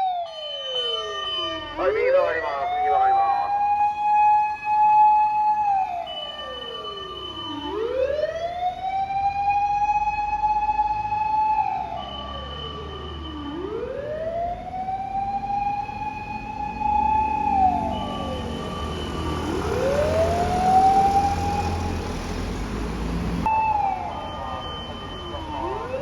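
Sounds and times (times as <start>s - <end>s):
fire truck siren wailing: 0.0s - 26.0s
steady high siren tone: 0.0s - 26.0s
truck engine rumble: 14.0s - 26.0s.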